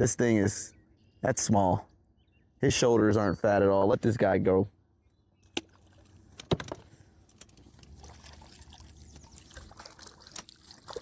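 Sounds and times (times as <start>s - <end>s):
water trickling: 5.6s - 6.4s, 7.3s - 11.0s
water splash: 7.7s - 11.0s.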